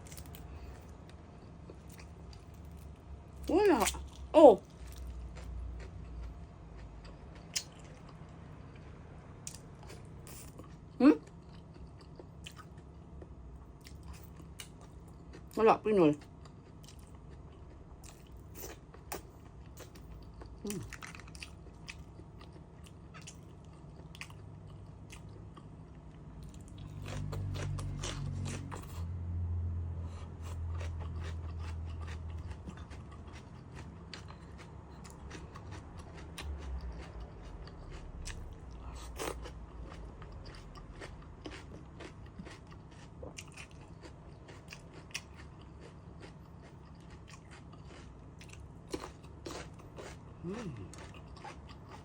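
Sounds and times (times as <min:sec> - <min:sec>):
crunchy biting and chewing: 0:26.4 - 0:29.1, 0:30.2 - 0:52.0.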